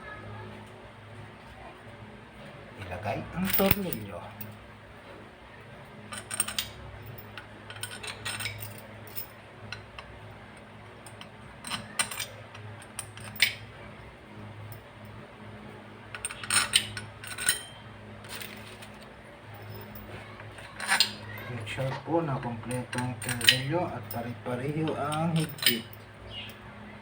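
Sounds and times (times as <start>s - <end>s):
tools clinking on metal cover: 3.4s - 4.5s, 6.1s - 10.1s, 11.0s - 13.7s, 16.2s - 26.6s.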